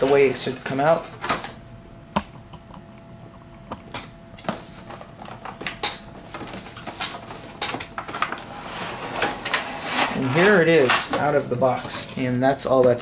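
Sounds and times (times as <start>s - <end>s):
cardboard box rustling and scraping: 8.5s - 12.1s.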